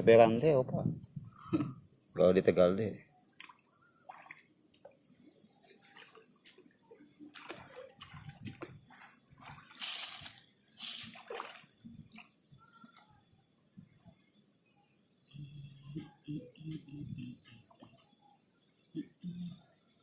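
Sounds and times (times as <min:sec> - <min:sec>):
water dripping and sloshing: 0:03.3 - 0:13.1
loud water splashes: 0:09.4 - 0:11.7.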